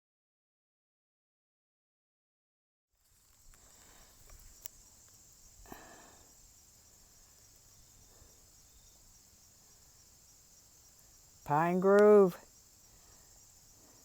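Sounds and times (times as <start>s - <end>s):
high-pitched insect chorus: 3.0s - 14.0s.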